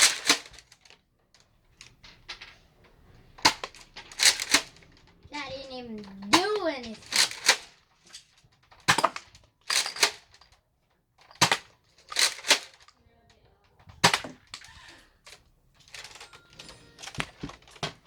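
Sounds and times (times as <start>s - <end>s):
toy dart blaster pumping and firing: 0.0s - 0.7s, 3.4s - 7.8s, 8.7s - 10.4s, 11.3s - 12.8s, 14.0s - 14.8s.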